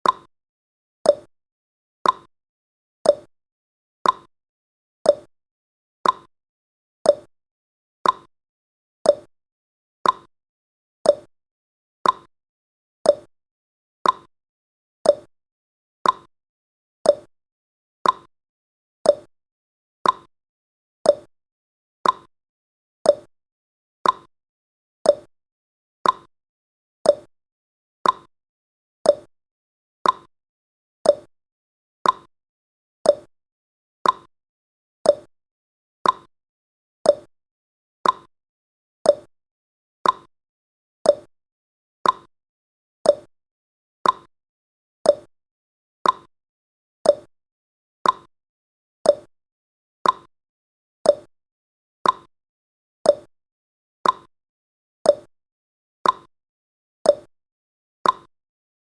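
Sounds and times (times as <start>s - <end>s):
clock-like tick-tock: 0.0s - 0.3s, 1.0s - 1.3s, 2.0s - 2.3s, 3.0s - 3.3s, 4.0s - 4.3s, 5.0s - 5.3s, 6.0s - 6.3s, 7.0s - 7.3s, 8.0s - 8.3s, 9.0s - 9.3s, 10.0s - 10.3s, 11.0s - 11.3s, 12.0s - 12.3s, 13.0s - 13.3s, 14.0s - 14.3s, 15.0s - 15.3s, 16.0s - 16.3s, 17.0s - 17.3s, 18.0s - 18.3s, 19.0s - 19.3s, 20.0s - 20.3s, 21.0s - 21.3s, 22.0s - 22.3s, 23.0s - 23.3s, 24.0s - 24.3s, 25.0s - 25.3s, 26.0s - 26.3s, 27.0s - 27.3s, 28.0s - 28.3s, 29.0s - 29.3s, 30.0s - 30.3s, 31.0s - 31.3s, 32.0s - 32.3s, 33.0s - 33.3s, 34.0s - 34.3s, 35.0s - 35.3s, 36.0s - 36.3s, 37.0s - 37.3s, 38.0s - 38.3s, 39.0s - 39.4s, 40.0s - 40.3s, 41.0s - 41.4s, 42.0s - 42.3s, 43.0s - 43.3s, 44.0s - 44.3s, 45.0s - 45.3s, 46.0s - 46.3s, 47.0s - 47.3s, 48.0s - 48.3s, 49.0s - 49.4s, 50.0s - 50.3s, 51.0s - 51.3s, 52.0s - 52.3s, 53.0s - 53.3s, 54.0s - 54.3s, 55.0s - 55.3s, 56.0s - 56.3s, 57.1s - 57.3s, 58.0s - 58.3s.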